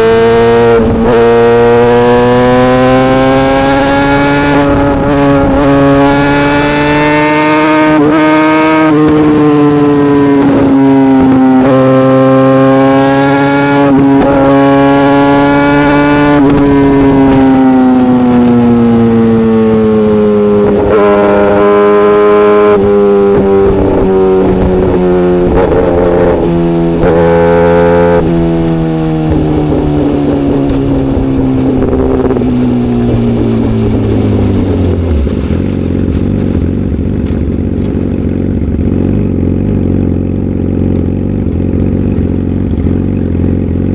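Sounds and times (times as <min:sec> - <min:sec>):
motorcycle engine revving: 0:00.0 - 0:43.9
motorcycle engine idling: 0:32.9 - 0:43.9.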